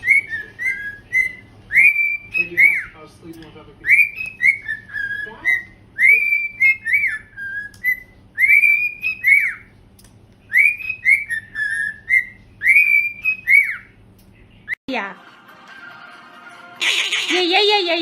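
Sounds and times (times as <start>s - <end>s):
parrot whistling a tune: 0.0s - 3.0s, 3.8s - 9.7s, 10.5s - 14.0s.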